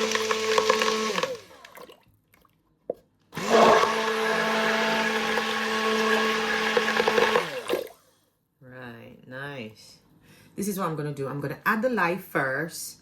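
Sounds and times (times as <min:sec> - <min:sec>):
immersion blender running: 0:00.0 - 0:01.8, 0:03.4 - 0:08.0.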